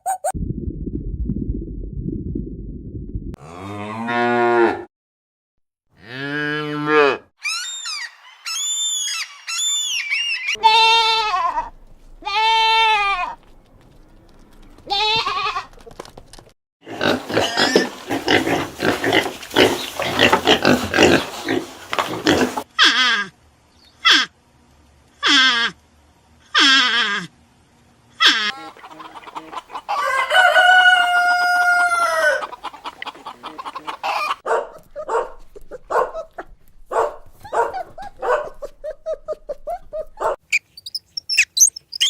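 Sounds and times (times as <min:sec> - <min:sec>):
cattle mooing: 0:06.0 - 0:07.2
high arching animal calls: 0:07.4 - 0:11.2, 0:28.2 - 0:34.4, 0:35.0 - 0:42.0
many animals calling: 0:07.4 - 0:11.2.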